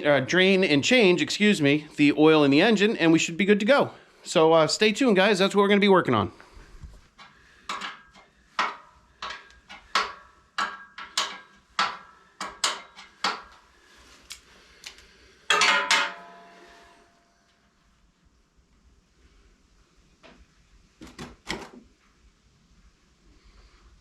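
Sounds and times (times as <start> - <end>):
metal tools clanking: 7.2 - 13.6, 15.5 - 17.0.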